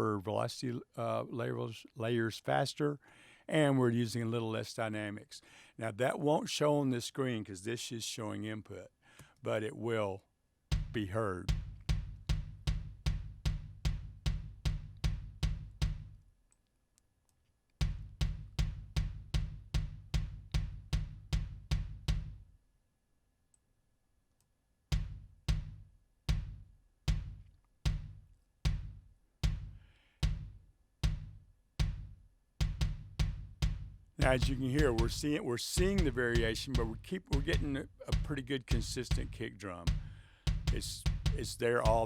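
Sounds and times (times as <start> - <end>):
kick drum hits: 10.7 - 16.2, 17.8 - 22.4, 24.9 - 42.0.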